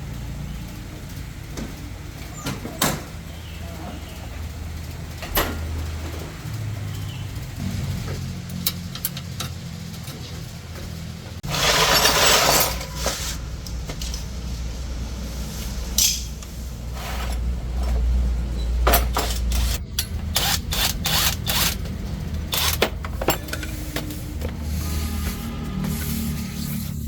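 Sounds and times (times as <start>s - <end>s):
metal tools clinking: 11.4s - 14.6s, 17.2s - 24.4s
steady low rumble: 13.4s - 25.8s.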